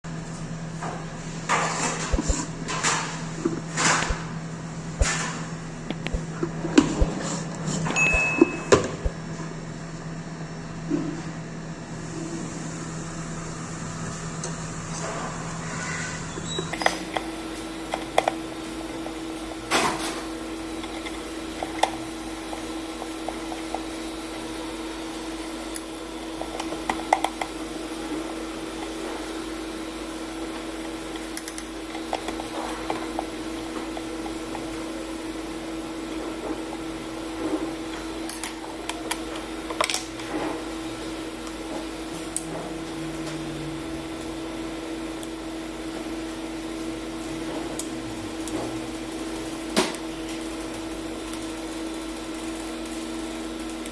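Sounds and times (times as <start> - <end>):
steady hum: 0.0 - 53.9.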